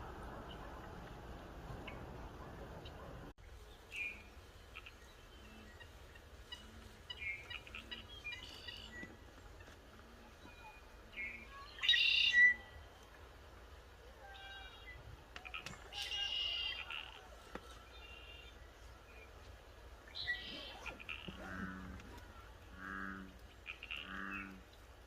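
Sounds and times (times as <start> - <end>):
faint low pulsing hum: 0.0 - 11.8.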